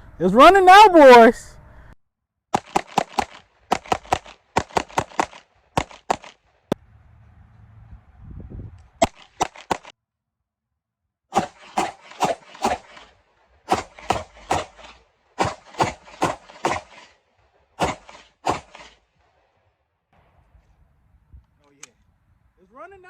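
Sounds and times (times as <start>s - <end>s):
pistol shots: 2.6s - 6.5s, 9.0s - 9.9s, 11.3s - 17.2s, 17.8s - 19.6s.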